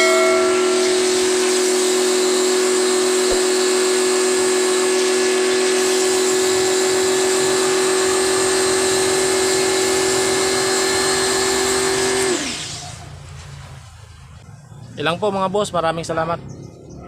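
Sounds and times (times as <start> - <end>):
pressure washer humming and hissing: 0.0 - 14.0.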